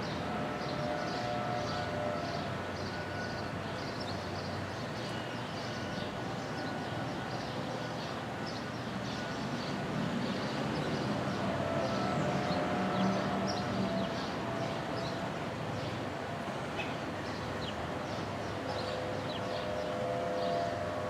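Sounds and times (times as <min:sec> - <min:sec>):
distant civil defense siren: 0:00.0 - 0:21.0.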